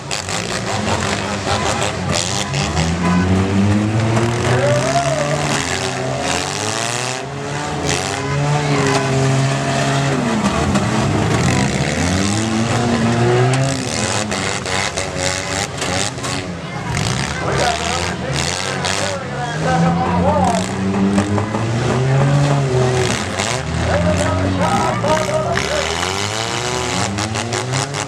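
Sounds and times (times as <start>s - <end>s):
car engines revving hard: 0.0s - 28.0s
tire squeal: 4.3s - 9.9s.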